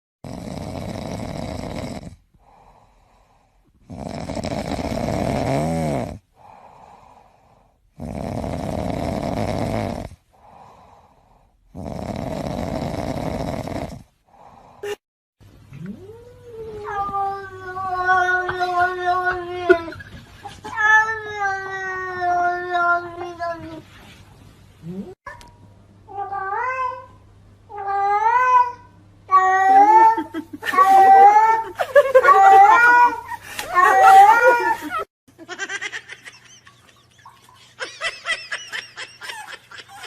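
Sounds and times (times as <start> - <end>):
cat snoring: 0.2 - 2.7, 3.8 - 7.0, 7.9 - 10.7, 11.7 - 14.5
cat meowing: 27.8 - 34.8.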